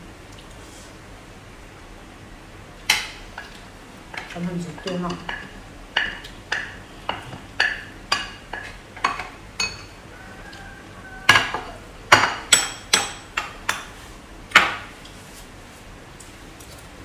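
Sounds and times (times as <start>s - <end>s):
cutlery clinking on dishes: 2.9s - 10.7s, 11.3s - 14.0s.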